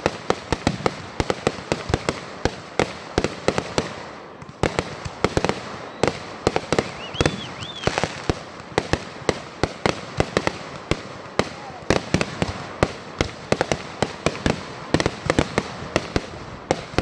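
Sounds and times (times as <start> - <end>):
fireworks popping and banging: 0.0 - 17.0
short whistling tones: 5.7 - 8.2.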